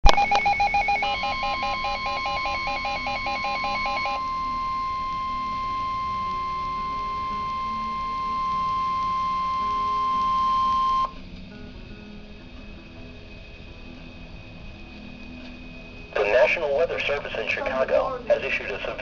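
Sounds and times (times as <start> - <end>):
rapid pulsed beeps: 0.0 - 11.2
steady high alarm tone: 0.0 - 11.2.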